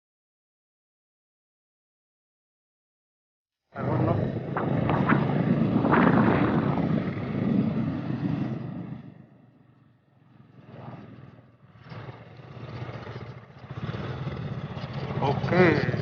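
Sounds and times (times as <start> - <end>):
rushing ride noise: 3.8 - 9.0, 12.4 - 16.0
motorcycle engine running: 11.1 - 16.0.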